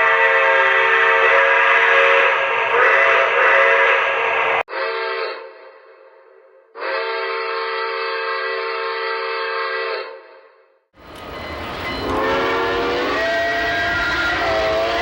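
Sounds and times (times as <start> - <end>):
train whistle: 0.0 - 15.0
moving train rumbling: 11.0 - 15.0.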